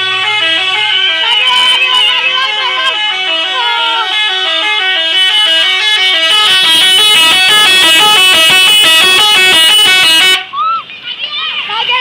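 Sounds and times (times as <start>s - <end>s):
multi-tone air horn melody: 0.0s - 10.5s.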